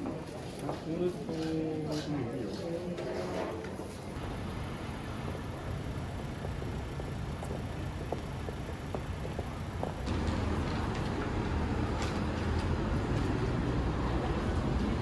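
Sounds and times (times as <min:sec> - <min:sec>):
low rumble of vehicle noise: 0:04.1 - 0:15.0.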